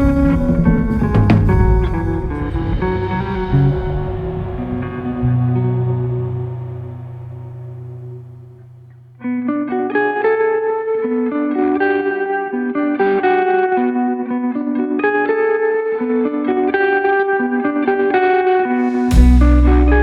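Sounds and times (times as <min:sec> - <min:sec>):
low held chord: 0:00.0 - 0:09.2, 0:18.8 - 0:20.0
plucked guitar melody: 0:00.0 - 0:20.0.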